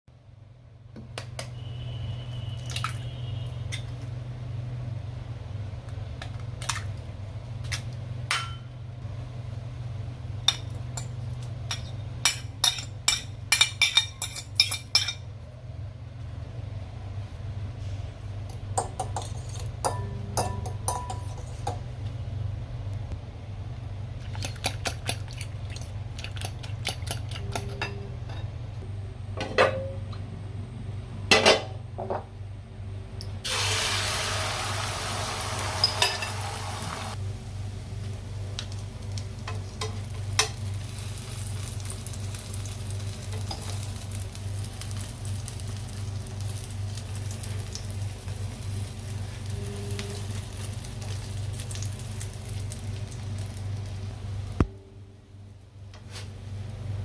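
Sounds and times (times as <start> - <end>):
steady low hum: 1.6 - 33.5, 37.0 - 57.0
utensils clinking against dishes: 10.5 - 15.2, 18.8 - 21.8, 26.4 - 28.5, 35.8 - 36.5.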